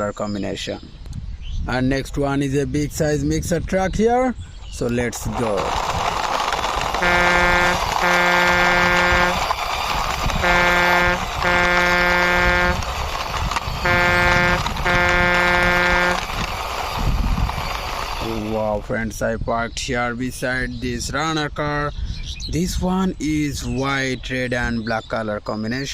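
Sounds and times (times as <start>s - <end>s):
truck horn honking: 7.0s - 9.5s, 10.2s - 13.1s, 13.8s - 16.4s.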